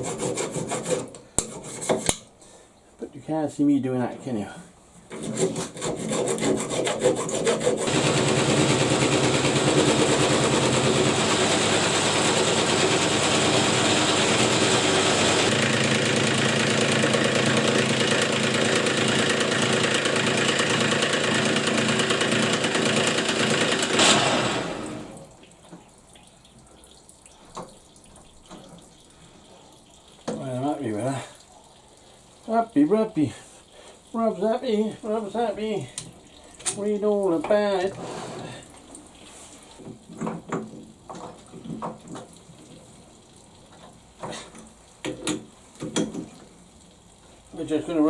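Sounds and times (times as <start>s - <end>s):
lathe motor hum: 7.9s - 25.1s
lathe cutting noise: 7.9s - 25.2s.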